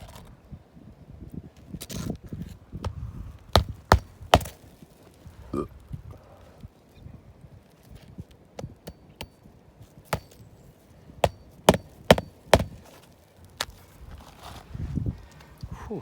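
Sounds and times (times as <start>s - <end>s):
tools knocking on shingle roof: 3.5s - 4.6s, 10.1s - 10.4s, 11.2s - 12.8s.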